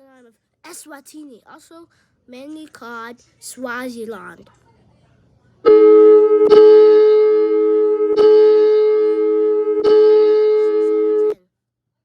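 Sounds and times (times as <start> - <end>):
electronic alarm tone: 5.7 - 11.4.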